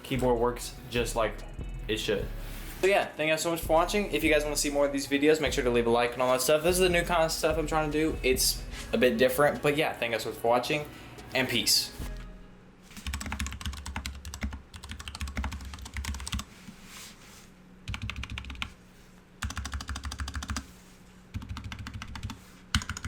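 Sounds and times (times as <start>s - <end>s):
mechanical keyboard typing: 13.0s - 16.5s, 17.9s - 18.7s, 19.4s - 20.6s, 21.3s - 23.0s.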